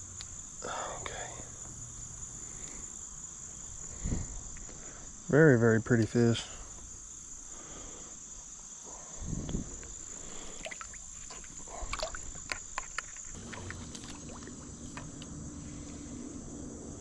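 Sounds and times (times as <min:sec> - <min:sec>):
crickets chirring: 0:00.0 - 0:17.0
creek water splashing: 0:10.0 - 0:15.2.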